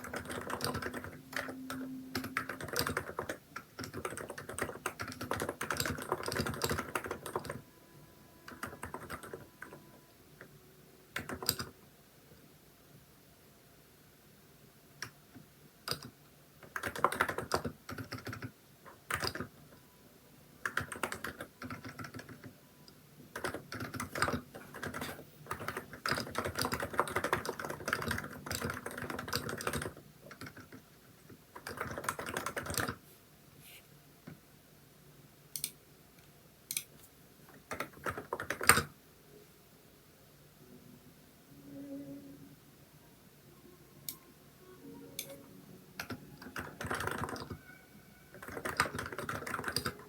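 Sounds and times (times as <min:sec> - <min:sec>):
keyboard typing: 0:00.0 - 0:07.6, 0:08.4 - 0:10.0, 0:11.1 - 0:11.8, 0:15.9 - 0:19.8, 0:20.6 - 0:22.6, 0:23.3 - 0:33.0, 0:36.7 - 0:38.9, 0:44.9 - 0:50.0.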